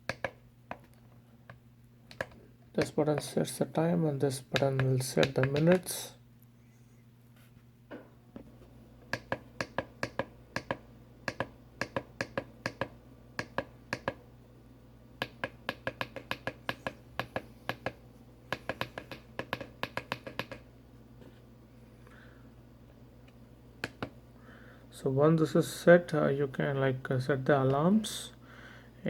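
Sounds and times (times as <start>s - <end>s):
plastic buttons clicking: 2.1s - 2.9s.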